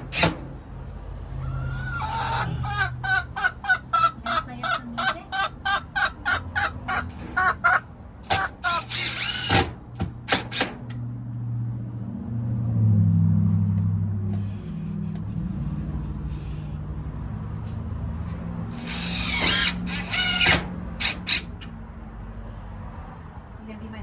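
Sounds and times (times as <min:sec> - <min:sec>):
chicken squawking: 0:01.3 - 0:09.3
small motor running: 0:08.7 - 0:09.6, 0:18.7 - 0:21.5.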